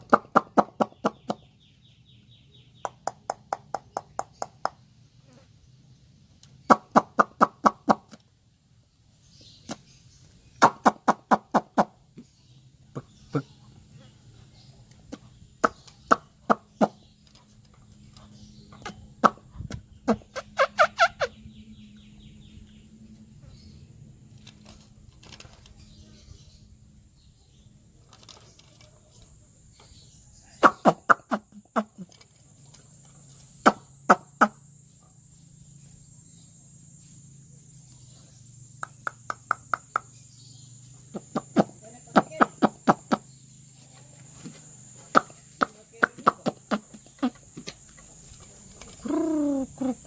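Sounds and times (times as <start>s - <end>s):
bird clucking calls: 0.0s - 1.6s, 6.6s - 8.2s, 9.4s - 12.3s, 12.9s - 14.2s, 15.0s - 17.1s, 18.2s - 21.5s, 29.8s - 32.3s, 33.4s - 34.6s, 38.7s - 50.0s
faint low hum: 12.0s - 50.0s.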